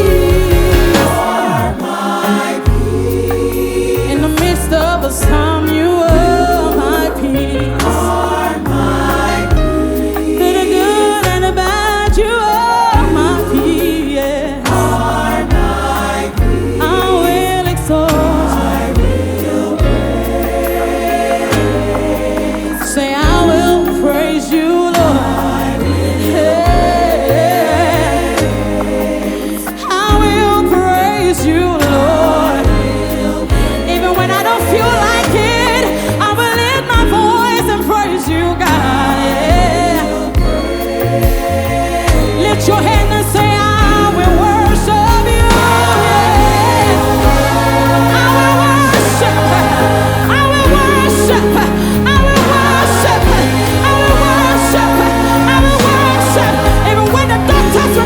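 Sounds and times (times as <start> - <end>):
bass guitar: 0.0 - 2.0, 2.6 - 58.0
drums: 0.0 - 58.0
full band playing: 0.0 - 58.0
singers and choir: 0.0 - 58.0.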